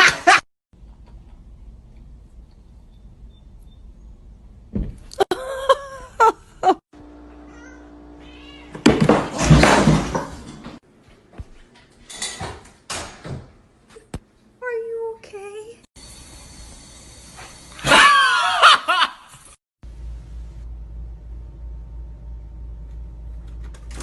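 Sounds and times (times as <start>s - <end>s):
cat meowing: 7.5s - 8.8s.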